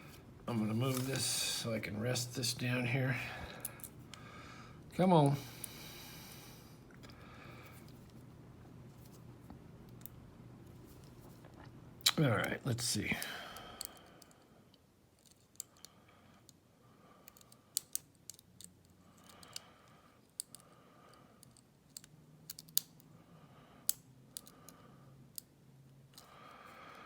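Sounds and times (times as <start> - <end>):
lock pick clicking and scraping: 21.4 - 23.0, 23.9 - 24.5.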